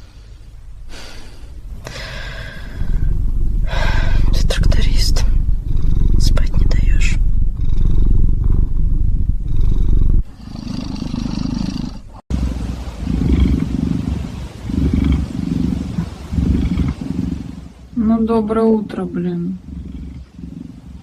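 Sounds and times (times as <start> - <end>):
cat snoring loudly: 5.5 - 17.9, 19.4 - 21.0.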